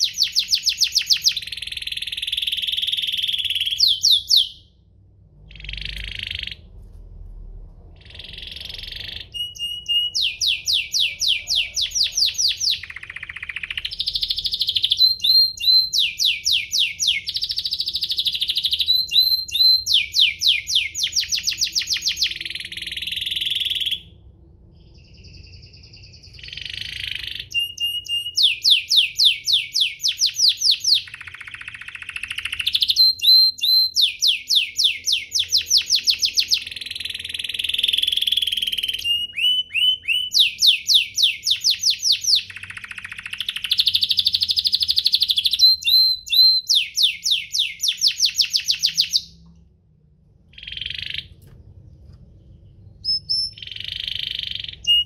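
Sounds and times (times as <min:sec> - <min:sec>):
canary singing: 0:00.0 - 0:04.8, 0:05.4 - 0:06.8, 0:08.0 - 0:24.2, 0:24.8 - 0:49.5, 0:50.5 - 0:51.6, 0:52.6 - 0:55.0.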